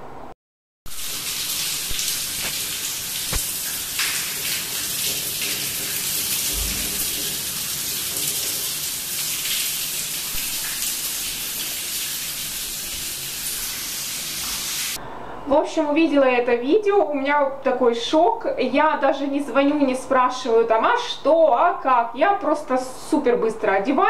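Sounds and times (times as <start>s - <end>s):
water gushing from pipe: 0.9s - 15.0s.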